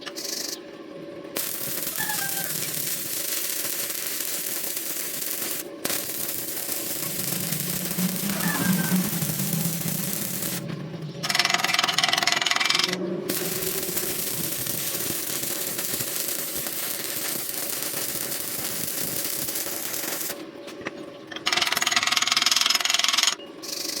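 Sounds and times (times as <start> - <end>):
arc welding crackling hiss: 1.4 - 20.4.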